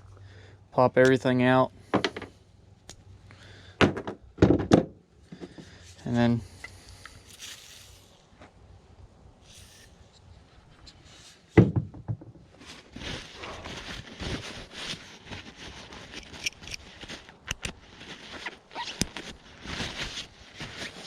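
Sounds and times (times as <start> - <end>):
thunk: 11.6 - 12.4
rustling and small clicks: 13.8 - 21.0.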